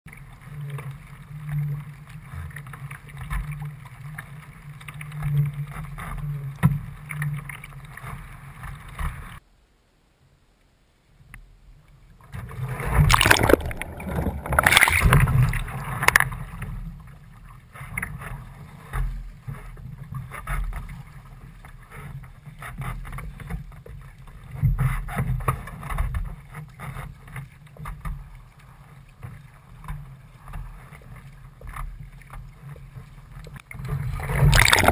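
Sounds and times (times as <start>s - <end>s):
water sloshing and splashing: 12.3s - 34.9s.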